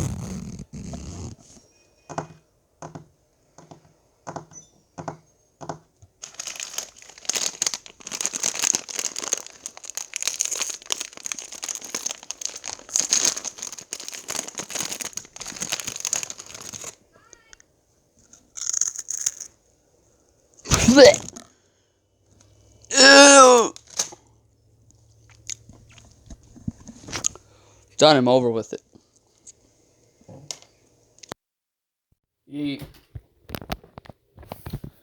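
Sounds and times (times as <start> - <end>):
packaging crinkling: 6.2 - 17.6, 18.2 - 19.6, 25.3 - 27.4.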